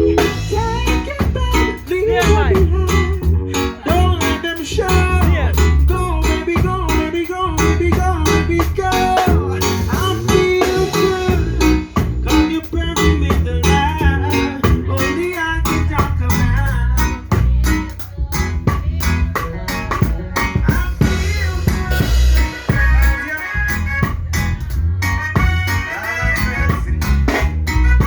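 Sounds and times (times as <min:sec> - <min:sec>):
drum beat: 0:00.0 - 0:24.8, 0:25.4 - 0:28.0
bass guitar: 0:00.0 - 0:28.0
guitar: 0:00.0 - 0:28.0
live band playing: 0:00.0 - 0:28.0.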